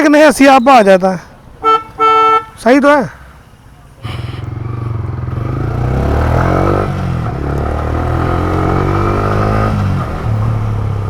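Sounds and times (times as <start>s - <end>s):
motorcycle engine revving: 4.1s - 11.0s.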